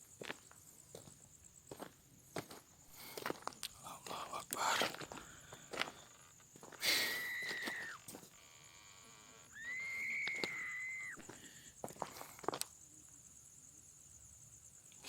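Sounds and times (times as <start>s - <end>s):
long high whistles: 6.8s - 11.6s.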